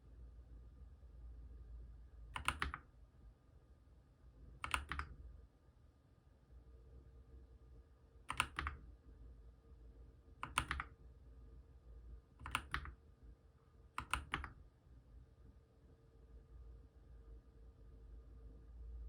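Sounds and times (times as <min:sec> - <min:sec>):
mechanical keyboard typing: 0:02.4 - 0:02.8, 0:04.6 - 0:05.2, 0:08.3 - 0:08.8, 0:10.4 - 0:11.0, 0:12.4 - 0:13.0, 0:14.0 - 0:14.6.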